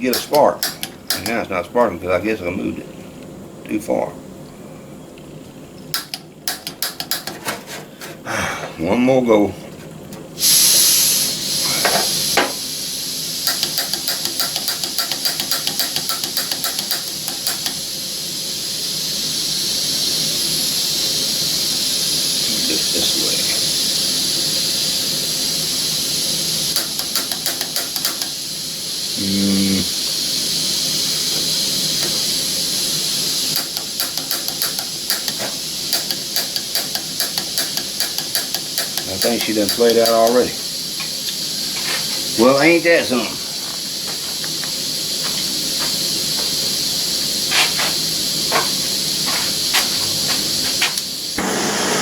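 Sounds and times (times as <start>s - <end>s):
igniter clicking: 0.0s - 1.6s, 5.8s - 7.5s, 13.4s - 17.8s, 26.7s - 28.4s, 33.5s - 41.4s
gas hissing from burner: 0.0s - 52.0s.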